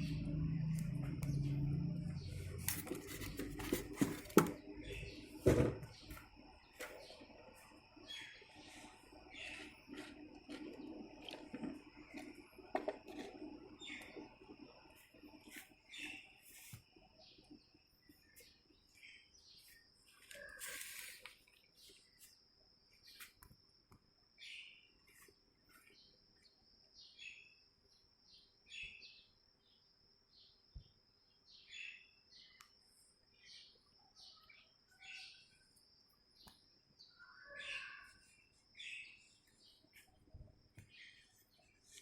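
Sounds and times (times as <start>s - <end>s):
faint bird chirps: 4.7s - 11.0s, 24.4s - 42.0s.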